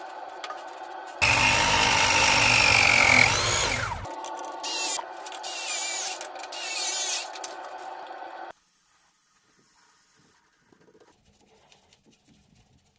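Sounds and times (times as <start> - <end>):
power tool whining: 1.2 - 4.1.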